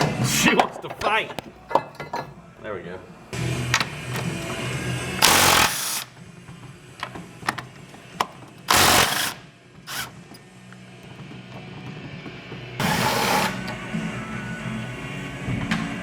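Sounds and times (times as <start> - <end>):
ratchet wrench ratcheting: 5.2 - 6.1, 8.7 - 10.2.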